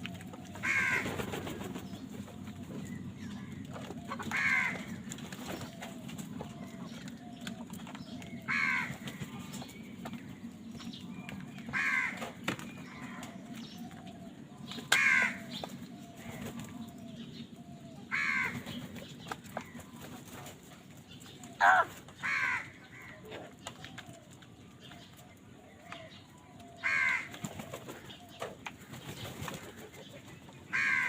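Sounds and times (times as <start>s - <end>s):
crow cawing: 0.6s - 1.0s, 4.3s - 4.9s, 8.5s - 8.9s, 11.8s - 12.2s, 15.0s - 15.4s, 18.1s - 18.6s, 21.6s - 22.7s, 26.8s - 27.3s, 30.7s - 31.0s.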